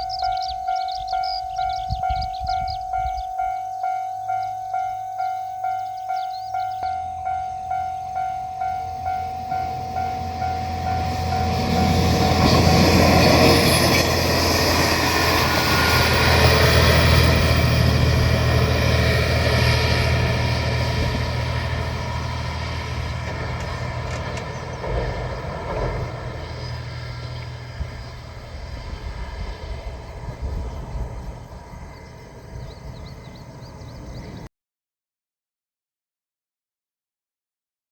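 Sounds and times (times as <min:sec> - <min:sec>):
diesel railcar engine drone: 0:00.0 - 0:34.5
wheels rushing on rail: 0:00.0 - 0:34.5
level crossing bell ringing: 0:02.9 - 0:12.2.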